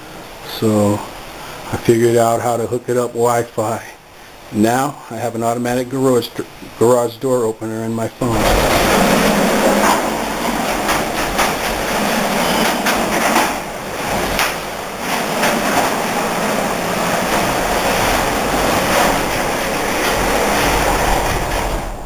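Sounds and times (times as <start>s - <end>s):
garage door opener rumbling: 8.2s - 22.0s.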